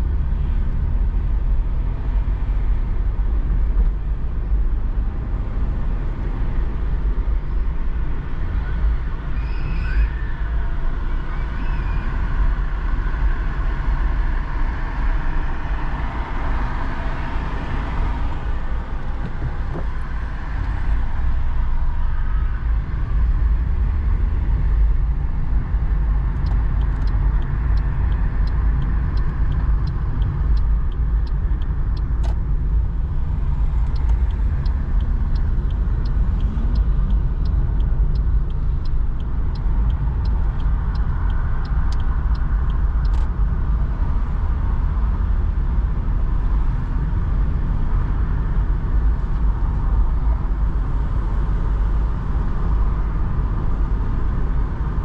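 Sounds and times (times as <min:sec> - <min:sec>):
car engine and tyres rumbling: 0:00.0 - 0:55.0
turn indicator ticking: 0:24.0 - 0:45.6.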